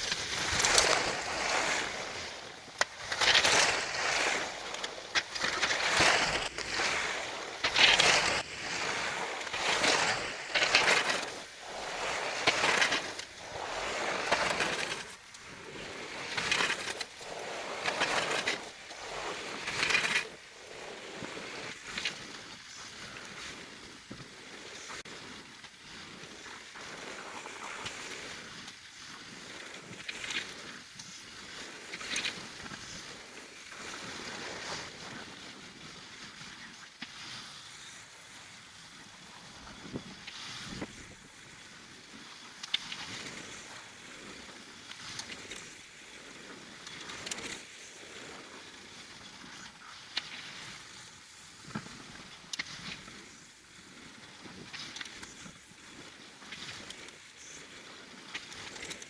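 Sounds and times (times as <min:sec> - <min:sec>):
blizzard wind gusting: 0:00.0 - 0:21.6.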